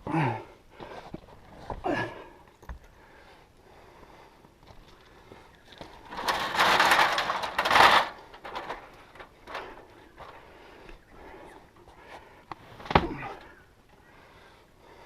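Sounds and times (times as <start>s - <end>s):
tent scraping on roof rack: 6.0s - 9.7s.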